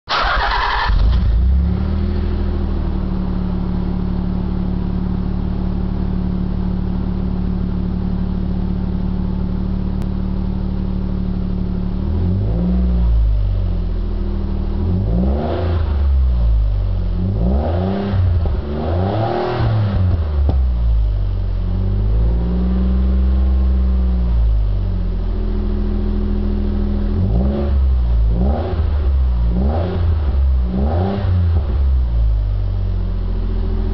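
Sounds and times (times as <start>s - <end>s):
car engine revving: 0.1s - 10.2s, 11.4s - 32.4s
car engine idling: 0.1s - 15.2s, 19.7s - 27.2s, 31.8s - 33.9s.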